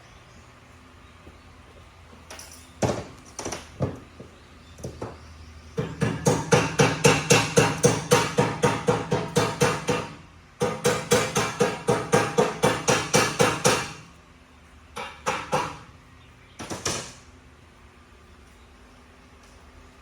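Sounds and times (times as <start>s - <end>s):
hammer striking steel: 5.8s - 14.0s.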